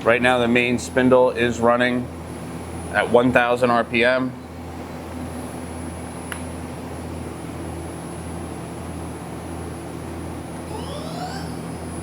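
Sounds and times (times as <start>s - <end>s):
rising spindle whine: 10.7s - 12.0s.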